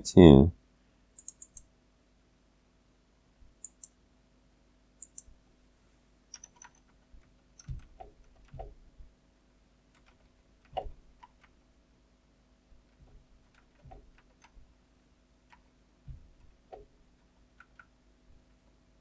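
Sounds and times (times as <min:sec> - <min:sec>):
keyboard and mouse clicks: 0:01.2 - 0:01.7, 0:03.6 - 0:04.0, 0:05.0 - 0:05.4, 0:06.3 - 0:08.8, 0:09.9 - 0:11.6, 0:12.9 - 0:14.6, 0:15.5 - 0:16.9, 0:17.6 - 0:18.0
dull taps: 0:16.0 - 0:16.9.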